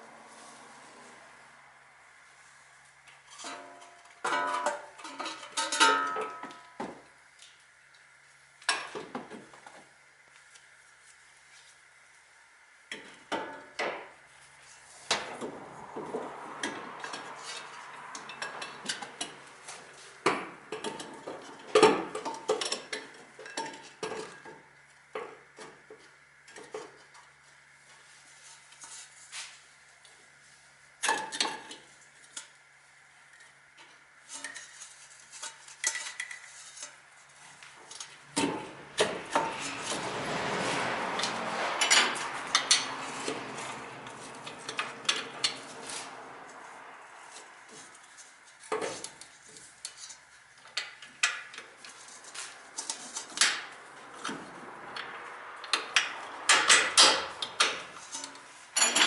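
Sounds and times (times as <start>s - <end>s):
metal tools clinking: 56.5s - 59.0s.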